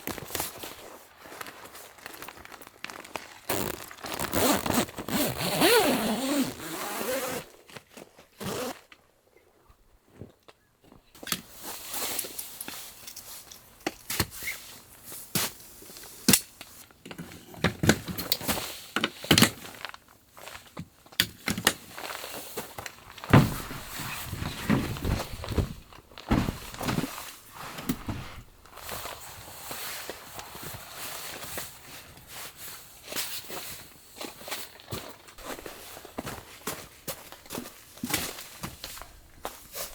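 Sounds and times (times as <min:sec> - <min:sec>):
footsteps: 0:23.0 - 0:31.4, 0:35.4 - 0:39.9
sharp knocks and thunks: 0:23.3 - 0:27.2.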